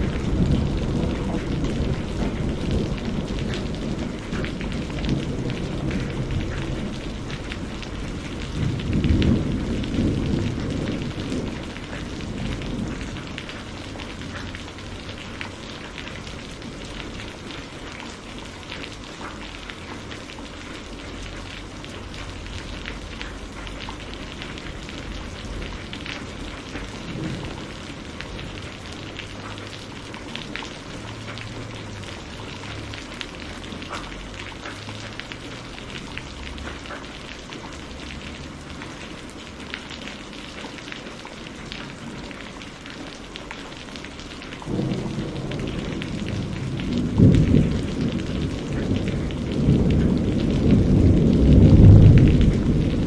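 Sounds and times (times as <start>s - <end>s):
distant thunder rumble: 0.0s - 18.3s, 21.1s - 35.4s, 44.6s - 53.0s
steady rain: 0.0s - 53.0s.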